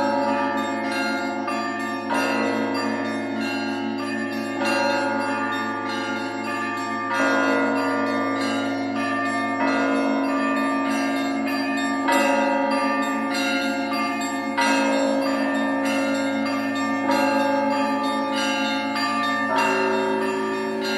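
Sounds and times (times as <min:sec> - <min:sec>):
heavy church bell strokes: 0:00.0 - 0:20.9.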